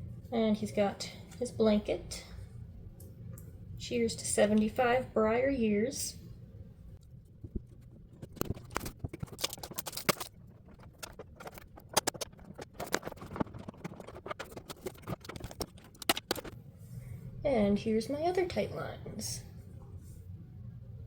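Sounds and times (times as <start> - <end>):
packaging crinkling and rustling: 7.5 - 16.6.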